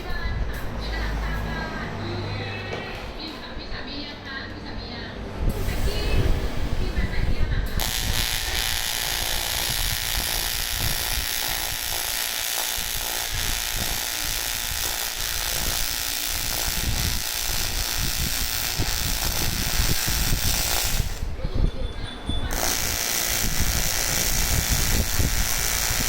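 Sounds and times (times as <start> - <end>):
welding arc buzzing hiss: 5.5 - 21.4, 22.5 - 26.0.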